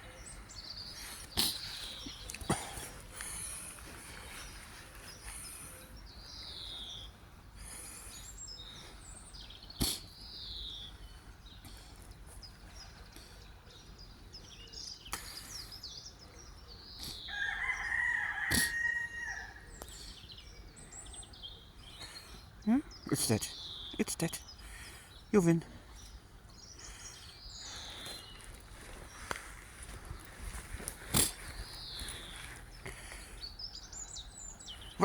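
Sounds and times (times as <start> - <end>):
small birds chirping: 0.0 - 35.0
rooster crowing: 17.3 - 19.7.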